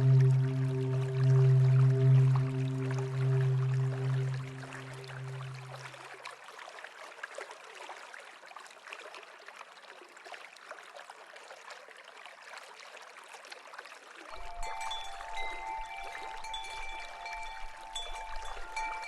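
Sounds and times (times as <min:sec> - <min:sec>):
soft music chord: 0:00.0 - 0:06.0, 0:14.3 - 0:19.0
river water trickling: 0:00.0 - 0:19.0.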